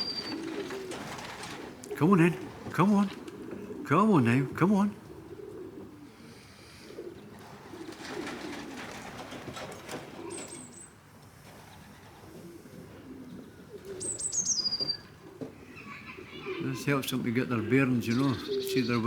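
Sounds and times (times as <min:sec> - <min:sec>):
wings flapping: 0:00.0 - 0:03.8, 0:07.2 - 0:10.8
pigeons cooing: 0:00.0 - 0:19.0.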